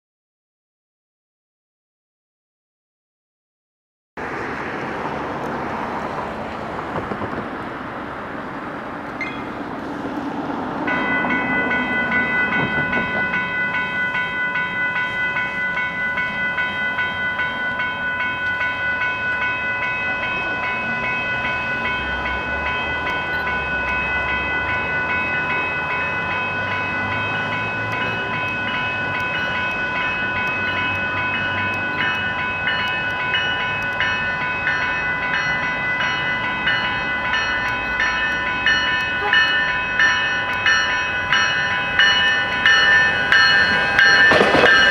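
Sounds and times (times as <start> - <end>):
level crossing warning bell: 9.2 - 9.7, 10.5 - 44.9.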